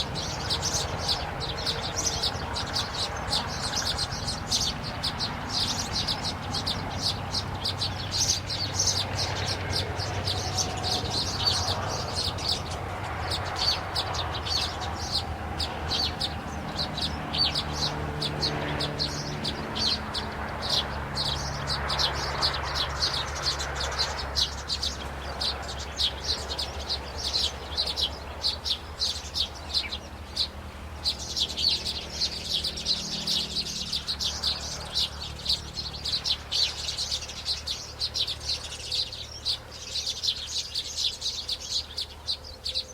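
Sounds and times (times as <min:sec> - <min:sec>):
small birds chirping: 0:00.0 - 0:42.9.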